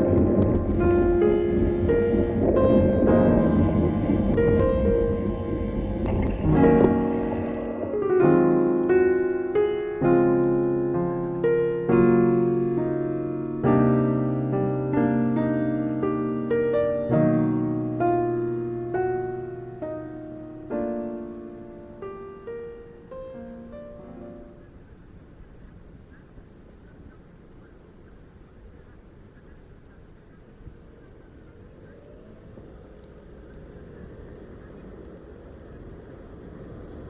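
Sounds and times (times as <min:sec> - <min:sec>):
slow solo piano: 0:00.0 - 0:28.0.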